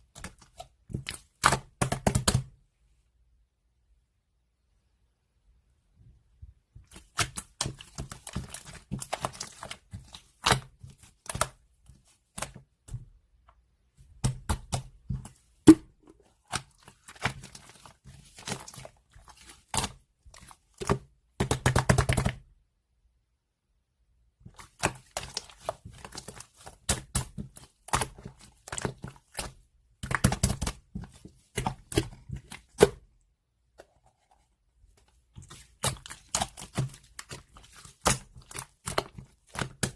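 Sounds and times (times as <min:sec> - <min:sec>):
slime squished by hand: 0:35.3 - 0:39.9.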